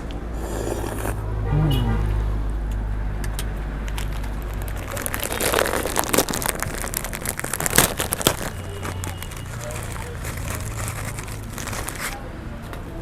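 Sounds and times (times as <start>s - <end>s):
crunchy chewing: 0.3s - 1.2s, 3.8s - 12.2s.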